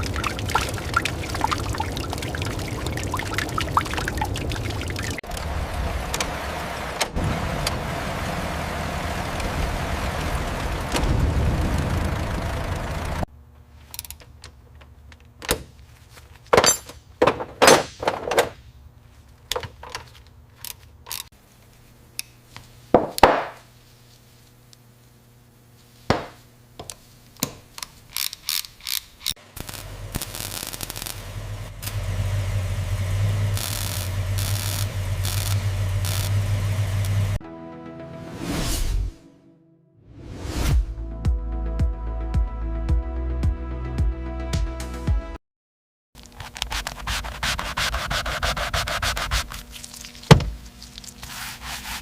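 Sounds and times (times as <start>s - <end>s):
hand tools clicking on metal: 27.4s - 29.4s.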